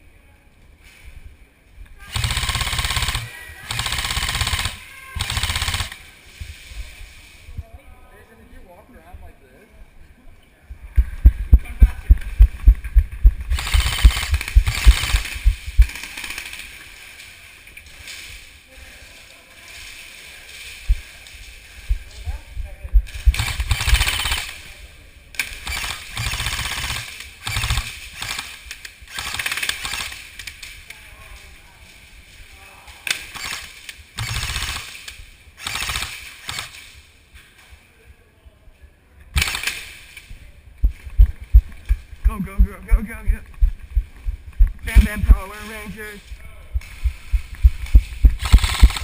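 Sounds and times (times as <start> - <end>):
rhythmic low thuds: 10.9 - 15.9, 21.8 - 24.0, 40.8 - 45.5, 46.6 - 49.0
airsoft gun shots: 13.5 - 16.4, 47.8 - 49.0.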